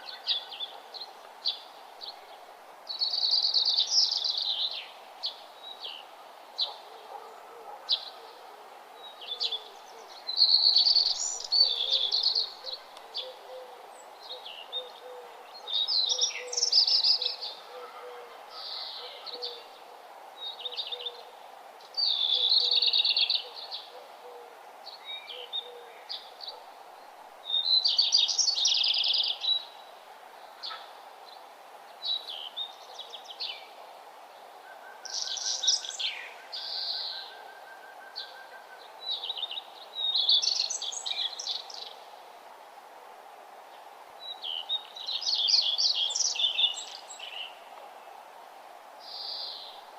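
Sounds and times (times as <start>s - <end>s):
background hiss: 0.0s - 49.9s
bird warbling song: 9.0s - 17.7s, 22.0s - 23.9s, 34.7s - 42.0s, 44.2s - 47.6s.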